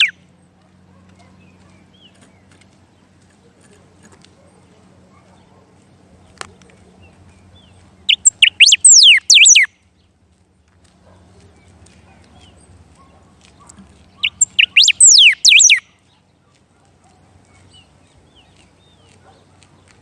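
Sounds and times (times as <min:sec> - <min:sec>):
songbird singing: 0:00.0 - 0:10.4, 0:11.1 - 0:20.0.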